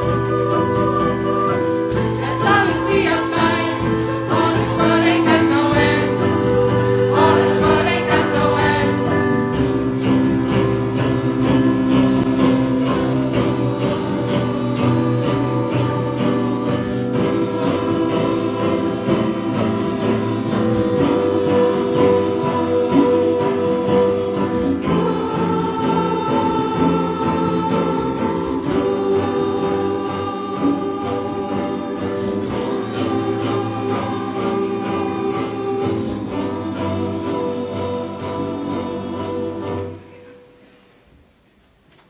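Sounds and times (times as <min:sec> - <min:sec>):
choir singing sustained chords: 0:00.0 - 0:40.9.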